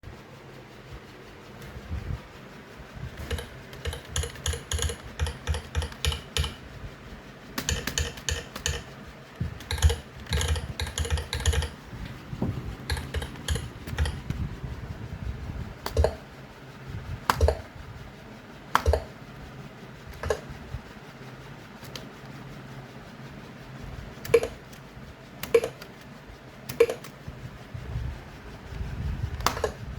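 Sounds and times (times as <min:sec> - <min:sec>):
keyboard keystrokes clicking: 0:03.2 - 0:06.6, 0:07.6 - 0:11.8, 0:12.8 - 0:14.4, 0:15.8 - 0:16.2, 0:17.2 - 0:17.6, 0:18.7 - 0:19.2, 0:20.1 - 0:20.5, 0:21.8 - 0:22.1, 0:24.2 - 0:24.8, 0:25.4 - 0:26.1, 0:26.7 - 0:27.2, 0:29.4 - 0:29.8.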